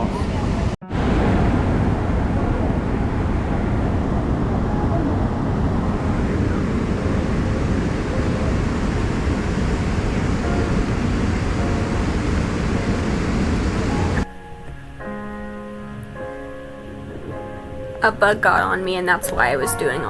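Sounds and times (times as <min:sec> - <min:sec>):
river rapids roaring: 0:00.0 - 0:15.0.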